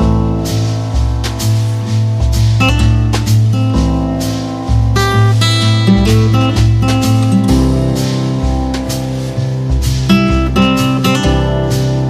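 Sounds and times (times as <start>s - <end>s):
guitar music with bass line: 0.0s - 12.0s.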